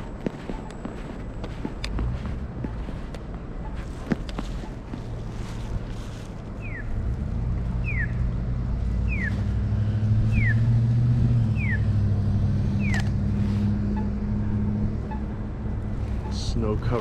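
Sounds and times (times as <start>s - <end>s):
vehicle engine humming: 0.0s - 17.0s
crossing signal chirping: 6.6s - 7.0s, 7.8s - 8.3s, 9.0s - 12.1s, 12.7s - 13.1s.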